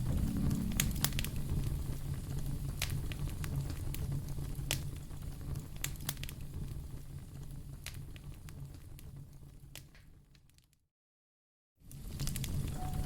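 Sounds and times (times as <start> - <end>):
low steady rumble: 0.0 - 9.4
wood fire crackling: 0.0 - 10.8, 11.8 - 13.0.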